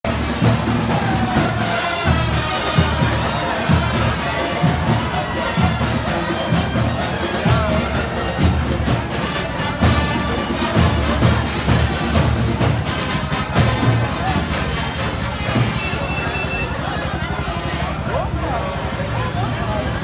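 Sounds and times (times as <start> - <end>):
steady drum beat: 0.0 - 18.3
marching band playing: 0.1 - 20.0.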